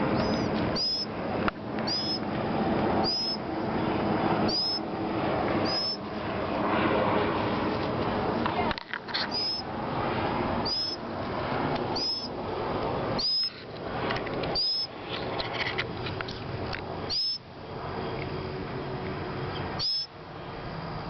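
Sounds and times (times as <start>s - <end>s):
steady rushing hiss: 0.0s - 21.0s
bird chirping: 0.1s - 1.1s, 1.8s - 2.2s, 3.0s - 3.5s, 4.5s - 4.9s, 5.6s - 6.0s, 9.1s - 9.7s, 10.6s - 11.0s, 11.9s - 12.3s, 13.2s - 13.6s, 14.5s - 16.4s, 17.0s - 17.4s, 19.5s - 20.5s.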